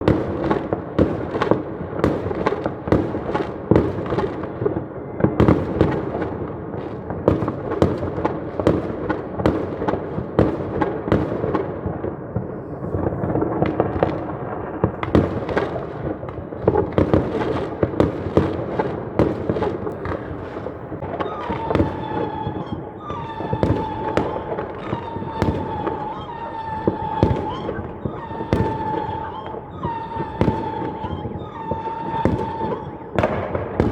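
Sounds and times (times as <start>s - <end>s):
fireworks bangs and crackling: 0.0s - 33.9s
whistling tone: 21.2s - 33.3s.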